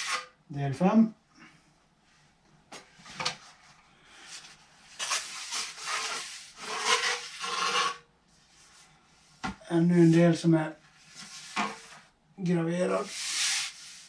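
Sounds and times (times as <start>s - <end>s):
pole sections scraping together: 5.0s - 8.1s.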